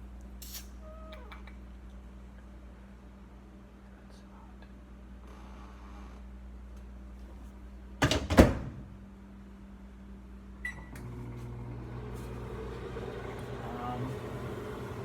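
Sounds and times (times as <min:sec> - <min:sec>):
microwave humming: 0:10.3 - 0:15.0.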